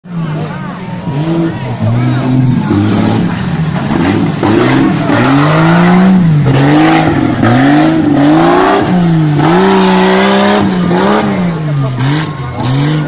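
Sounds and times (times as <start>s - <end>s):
off-road vehicle engine revving: 0.1s - 13.0s.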